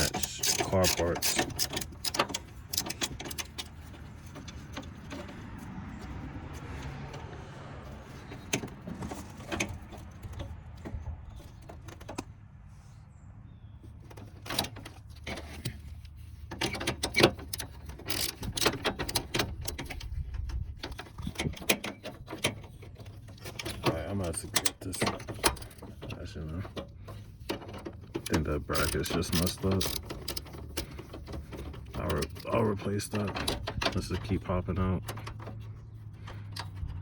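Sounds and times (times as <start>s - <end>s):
hand ratchet clicking: 0.0s - 5.3s, 16.6s - 22.4s, 28.2s - 34.1s
metal handling clicks: 0.0s - 7.4s, 14.0s - 37.0s.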